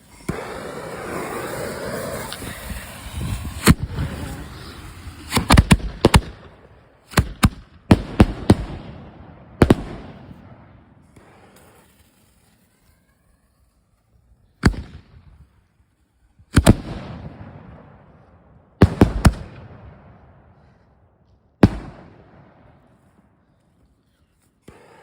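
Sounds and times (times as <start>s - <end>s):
fireworks hissing crackle: 0.0s - 7.4s, 9.6s - 16.8s, 22.6s - 25.0s
fireworks bangs: 0.0s - 12.9s, 16.5s - 20.9s, 21.6s - 23.4s.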